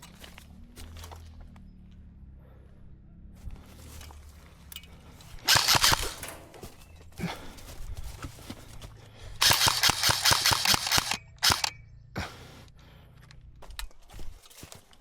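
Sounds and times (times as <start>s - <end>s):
airsoft gunshots: 5.5s - 6.3s, 9.4s - 11.7s.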